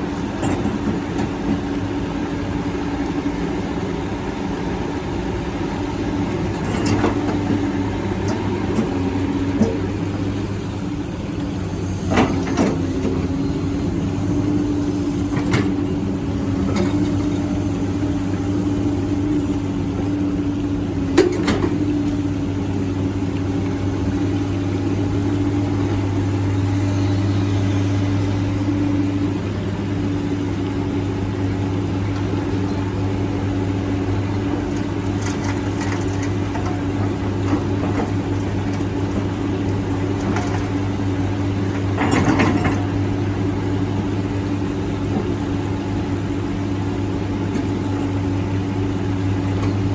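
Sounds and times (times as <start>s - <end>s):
diesel engine running: 0.0s - 49.9s
hydraulic whine: 6.6s - 30.5s.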